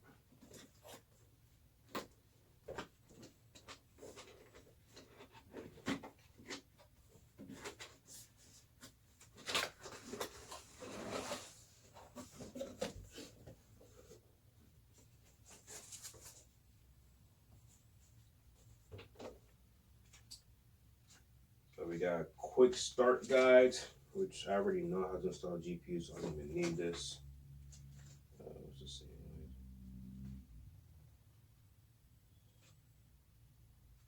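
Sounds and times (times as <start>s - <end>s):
scraping rustle: 7.4s - 14.2s, 15.0s - 16.6s.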